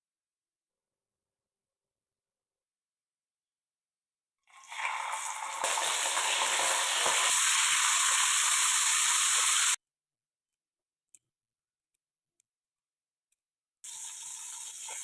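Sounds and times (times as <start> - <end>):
food sizzling in hot oil: 4.5 - 9.8, 13.8 - 15.0.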